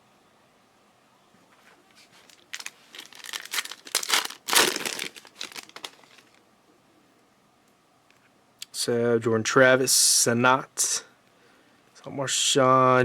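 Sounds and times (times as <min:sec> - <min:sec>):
foil wrapper tearing and crinkling: 0:02.2 - 0:06.4.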